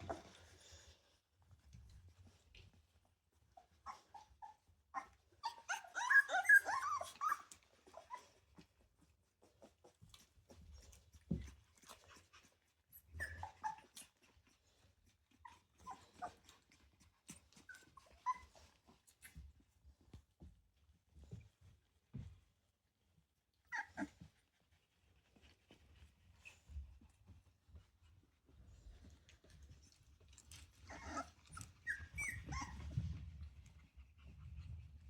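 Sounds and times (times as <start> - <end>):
puppies whimpering and squeaking: 3.4 - 8.7, 11.9 - 19.6, 23.6 - 24.4, 29.6 - 34.4.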